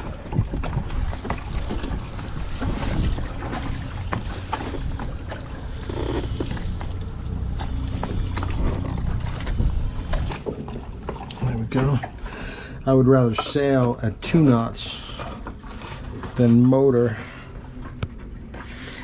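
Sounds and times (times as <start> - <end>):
steady low hum: 0.0 - 12.8.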